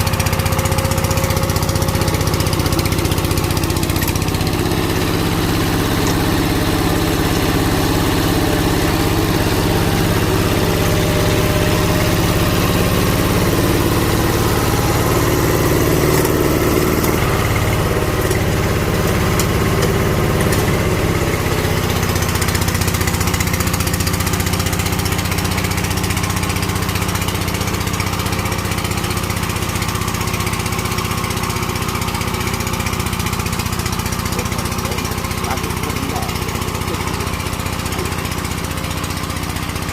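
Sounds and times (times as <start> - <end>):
diesel tiller engine running: 0.0 - 39.9.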